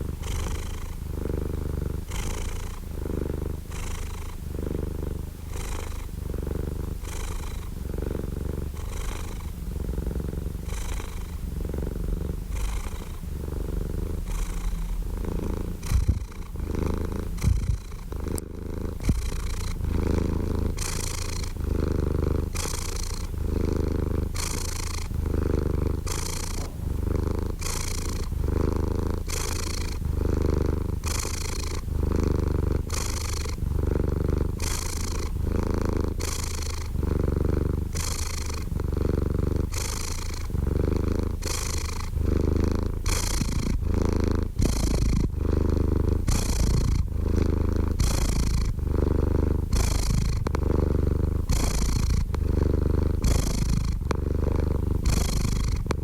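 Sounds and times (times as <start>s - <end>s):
cat purring: 0.0s - 56.0s
low thumps: 15.9s - 16.3s.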